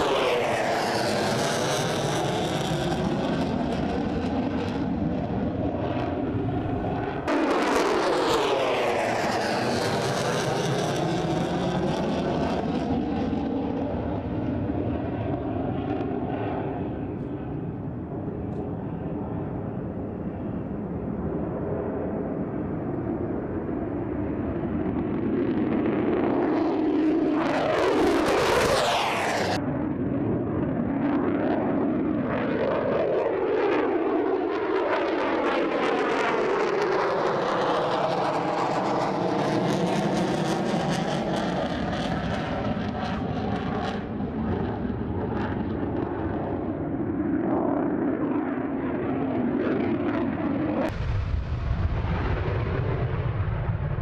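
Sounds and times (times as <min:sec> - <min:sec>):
jet roar passing: 0:00.0 - 0:54.0
deep low rumble: 0:50.9 - 0:54.0.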